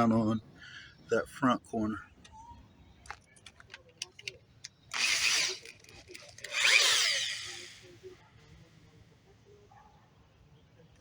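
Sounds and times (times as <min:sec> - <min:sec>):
power drill driving a screw: 0:04.9 - 0:07.9.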